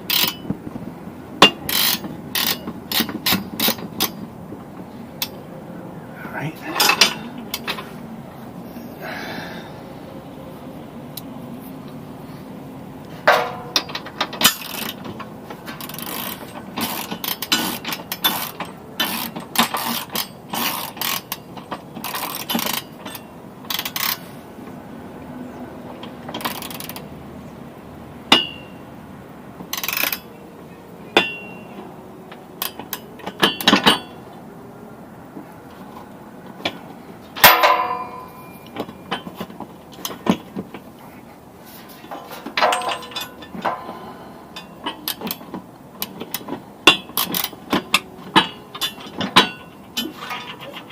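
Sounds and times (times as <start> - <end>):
ratchet wrench clicking: 0.1 - 0.4, 1.7 - 4.1, 15.8 - 21.4, 22.0 - 24.2, 26.4 - 27.0, 29.7 - 30.2
hand tools clanking on steel: 1.4 - 4.3, 5.2 - 5.4, 6.4 - 8.0, 13.2 - 24.2, 28.3 - 28.8, 31.1 - 34.3, 36.5 - 50.9.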